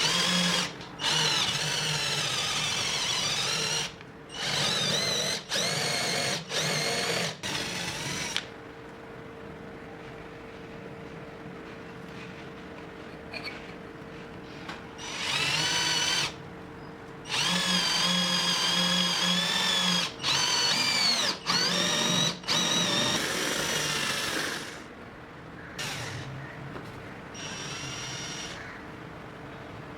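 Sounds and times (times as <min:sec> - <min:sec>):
electric drill whining: 0:00.0 - 0:08.5, 0:15.0 - 0:16.4, 0:17.3 - 0:24.9, 0:25.8 - 0:26.2, 0:27.4 - 0:28.6.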